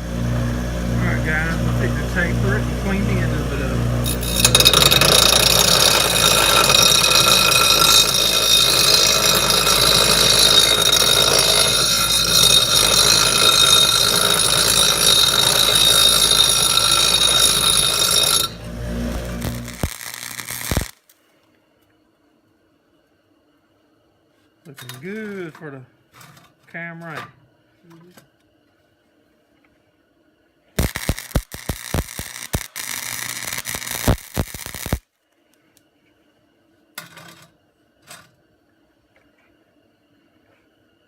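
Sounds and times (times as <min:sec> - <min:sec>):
electric grinder grinding steel: 0:00.0 - 0:21.0, 0:30.8 - 0:35.0.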